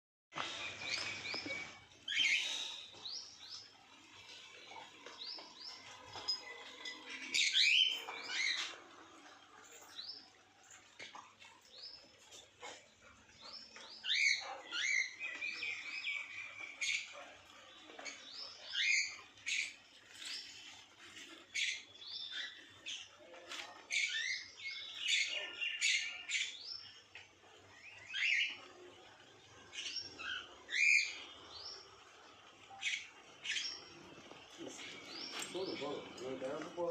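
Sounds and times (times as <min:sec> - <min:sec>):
small birds chirping: 0:00.3 - 0:36.9.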